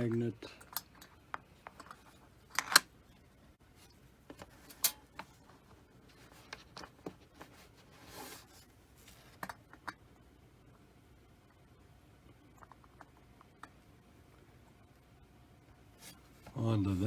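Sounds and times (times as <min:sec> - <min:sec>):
soft rubbing: 0:05.3 - 0:09.4.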